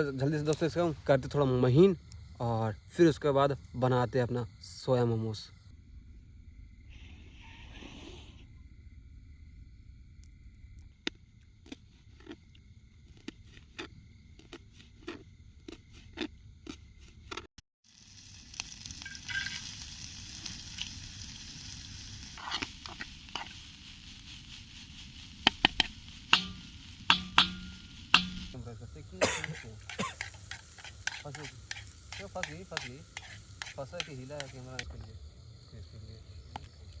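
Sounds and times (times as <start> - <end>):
crackling hiss: 0.0 - 5.7, 17.9 - 37.0.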